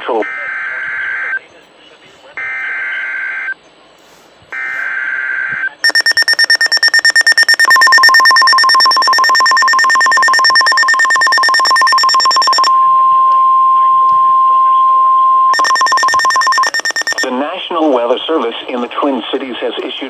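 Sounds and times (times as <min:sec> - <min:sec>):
rapid electronic beeping alarm: 0:05.8 - 0:12.7, 0:15.4 - 0:17.3
steady warning alert tone: 0:05.8 - 0:12.7, 0:15.5 - 0:17.3
warbling data tone: 0:05.8 - 0:12.7, 0:15.4 - 0:17.3.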